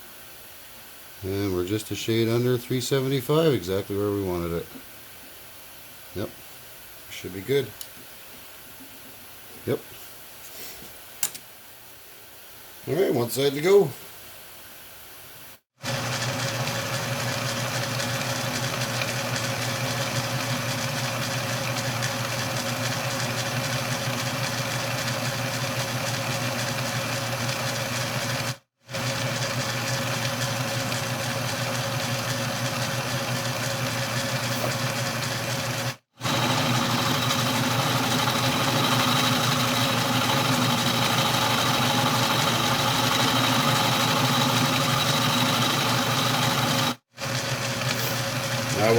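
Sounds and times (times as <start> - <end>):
metal lathe motor and gear hum: 29.0 - 48.9.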